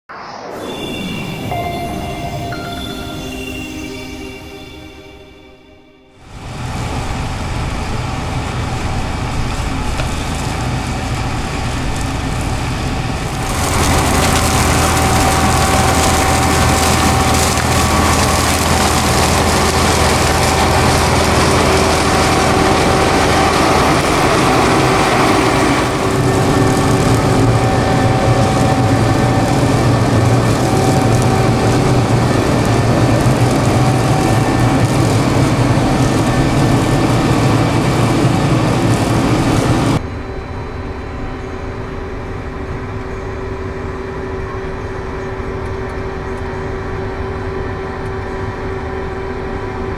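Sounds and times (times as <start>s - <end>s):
engine running steadily: 6.3s - 40.1s
harvester machinery clatter: 6.7s - 40.0s.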